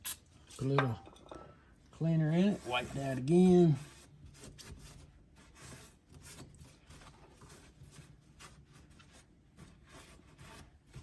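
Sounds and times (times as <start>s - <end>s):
rag rubbing metal: 2.3s - 4.1s.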